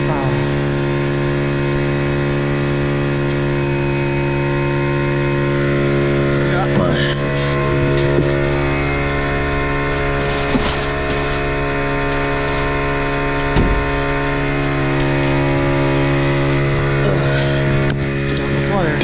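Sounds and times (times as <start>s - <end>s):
steady machine hum: 0.0s - 19.0s.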